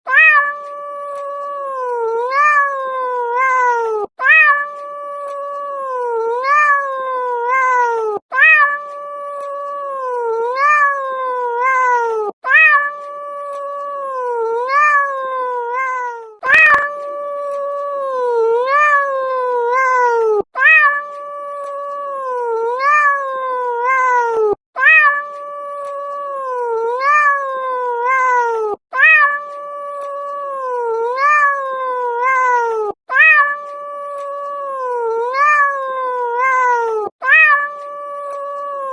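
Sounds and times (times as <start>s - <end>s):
cat meowing: 0.1s - 38.9s.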